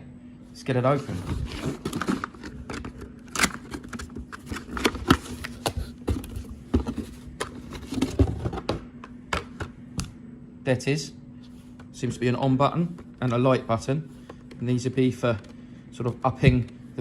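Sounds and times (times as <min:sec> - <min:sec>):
faint steady hum: 0:00.0 - 0:17.0
packaging rustling and scraping: 0:00.8 - 0:08.8.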